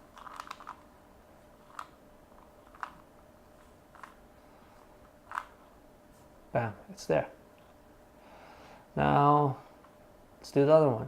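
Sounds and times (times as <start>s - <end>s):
plastic puzzle cube clicking: 0.2s - 0.8s, 2.6s - 3.0s, 5.3s - 5.5s.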